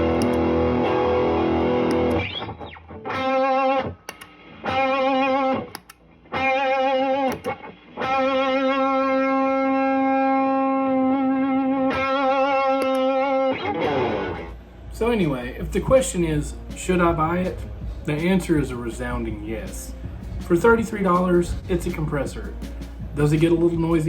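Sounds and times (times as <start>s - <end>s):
electric guitar sustained notes: 0.0s - 15.1s.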